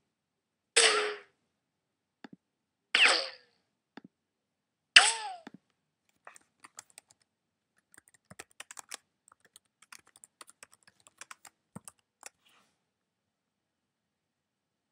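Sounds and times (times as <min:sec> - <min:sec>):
faint irregular clicks: 0:05.5 - 0:12.5.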